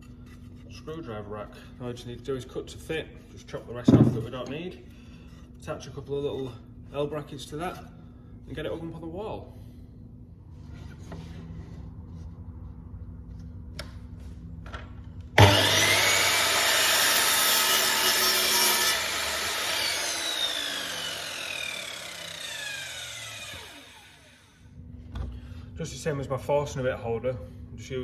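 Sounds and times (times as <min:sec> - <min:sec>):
electric saw cutting wood: 0:15.4 - 0:24.6
saw blade whine spinning down: 0:15.4 - 0:24.6.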